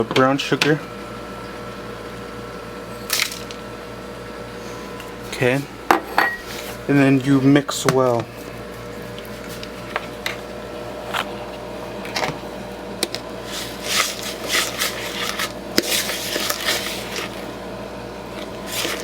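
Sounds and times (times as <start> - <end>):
utensil scraping a bowl: 13.4 - 17.5, 18.4 - 19.0.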